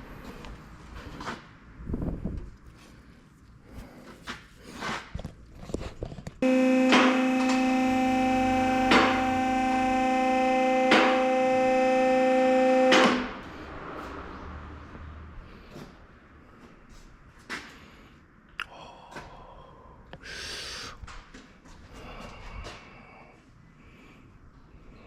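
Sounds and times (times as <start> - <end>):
machine hum: 6.4 - 13.7.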